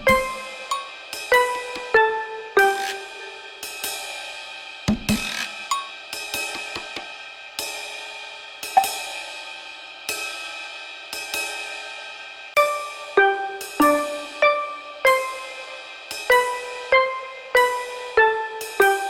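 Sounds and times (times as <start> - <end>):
drum hits: 0.0 - 0.5, 4.9 - 5.7
cymbal crashes: 2.8 - 14.4.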